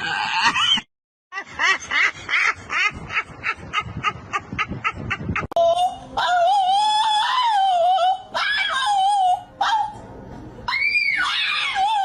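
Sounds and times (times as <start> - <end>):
dog whining: 5.6 - 10.0, 10.7 - 12.0.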